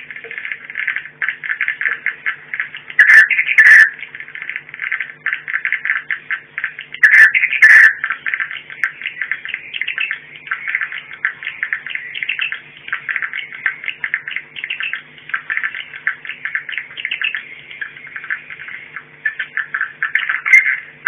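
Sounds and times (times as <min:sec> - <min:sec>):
faint steady hum: 0:00.0 - 0:21.0
loud crackles: 0:00.0 - 0:21.0
swiftlets twittering: 0:00.0 - 0:21.0.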